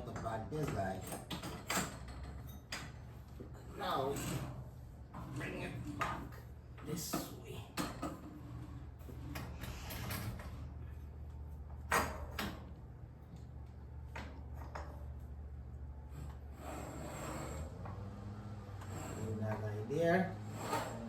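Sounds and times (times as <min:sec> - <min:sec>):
metal scraping slide: 0:16.1 - 0:19.5, 0:20.4 - 0:21.0.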